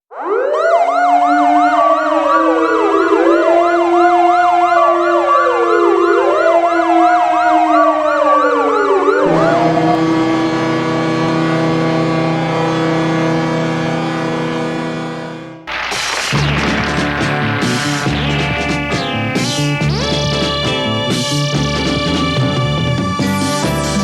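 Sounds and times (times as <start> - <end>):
goal horn siren wailing: 9.2 - 12.9, 15.7 - 21.4.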